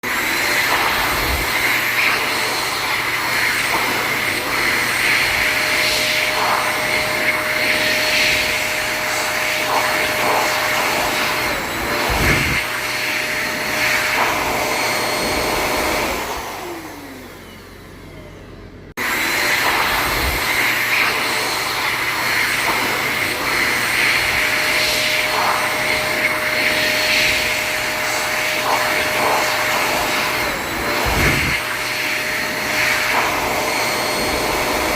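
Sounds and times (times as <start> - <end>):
hand dryer blowing: 0.0 - 18.4, 19.0 - 34.9.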